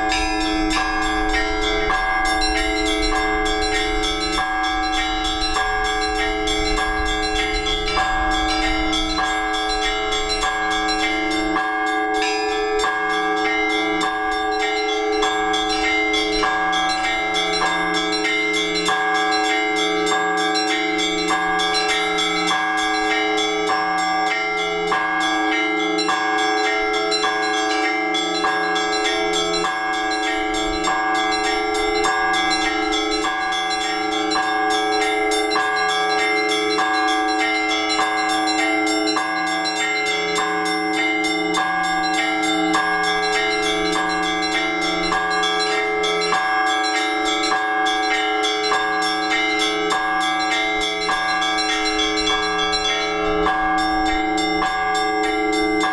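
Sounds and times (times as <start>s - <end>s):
low wind rumble on microphone: 0.0s - 11.6s
church bells pealing: 0.0s - 55.9s.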